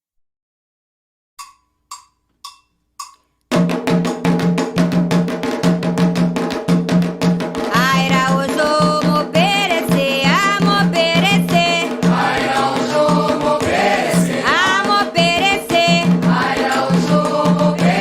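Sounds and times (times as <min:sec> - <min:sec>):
drums and percussion: 0:01.4 - 0:18.0
voices singing a chant: 0:09.5 - 0:18.0.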